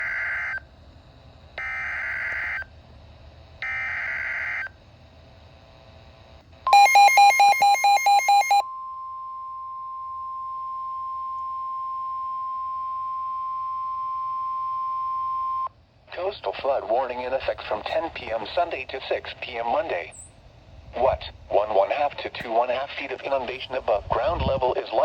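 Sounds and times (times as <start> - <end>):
rapid beeping: 6.7 - 8.6
steady alert tone: 6.7 - 8.6.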